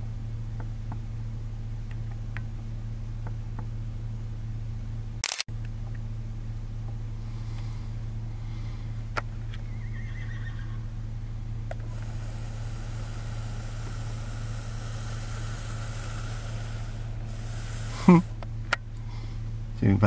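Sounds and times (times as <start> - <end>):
steady low hum: 0.0 - 20.0
horse whinnying faintly: 9.7 - 10.8.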